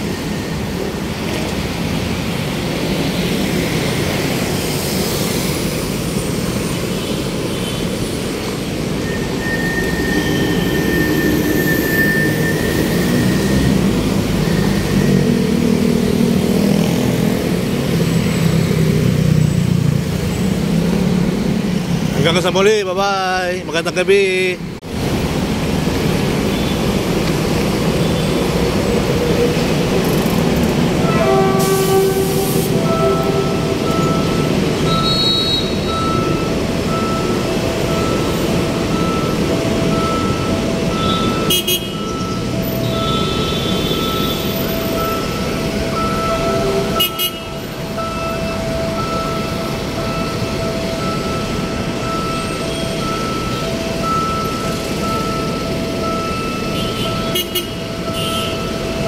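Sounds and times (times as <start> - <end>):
train rumbling past: 0.0 - 58.0
road traffic: 0.0 - 59.0
high electronic tone: 8.8 - 17.3, 31.0 - 59.0
train horn: 31.0 - 33.9, 46.4 - 47.5.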